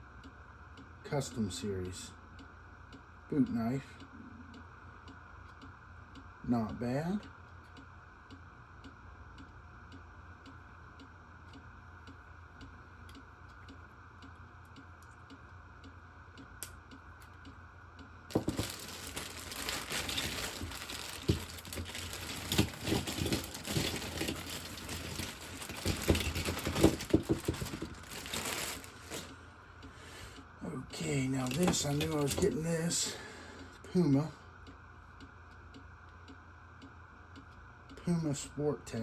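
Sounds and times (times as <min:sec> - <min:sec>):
faint steady ticking: 0:00.0 - 0:39.0
packing crinkling and rustling: 0:18.3 - 0:29.4, 0:31.2 - 0:32.6.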